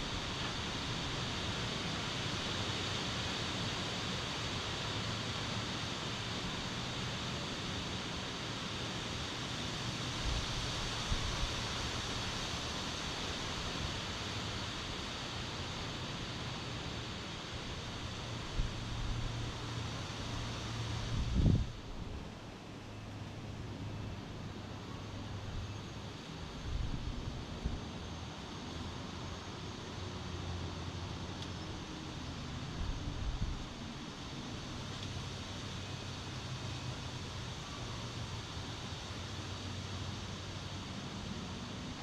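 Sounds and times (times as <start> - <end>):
wind through tree leaves: 0.0 - 42.0
wind buffeting microphone: 21.1 - 22.1.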